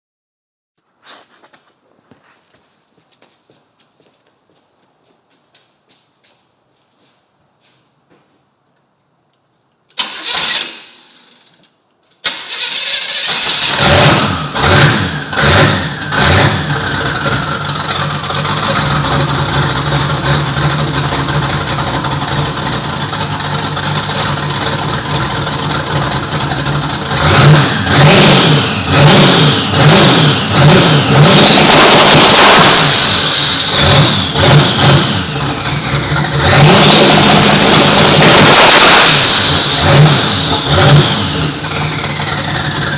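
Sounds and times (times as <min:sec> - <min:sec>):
car engine starting and revving: 0:10.0 - 0:11.5, 0:12.2 - 0:42.9.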